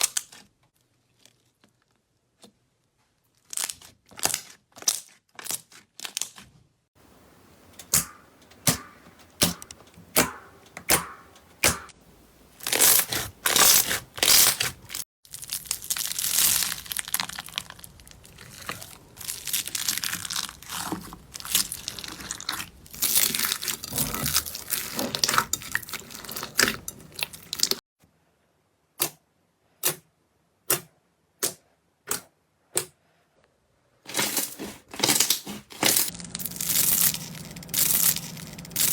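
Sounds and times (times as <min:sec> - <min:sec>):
slime crackling and popping: 0:12.6 - 0:27.8.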